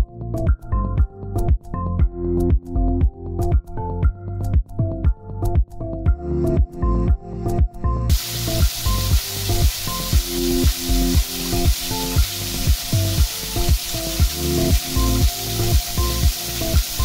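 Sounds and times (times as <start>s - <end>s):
background music with steady beat: 0.0s - 17.0s
falling water hissing: 8.1s - 17.0s.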